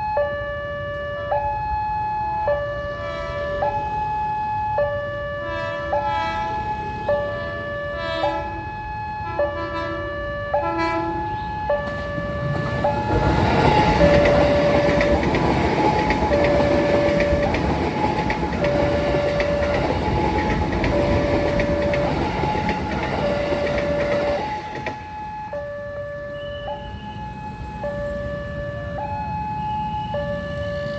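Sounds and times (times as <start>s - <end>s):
train wheels clattering over rails: 11.8s - 25.1s.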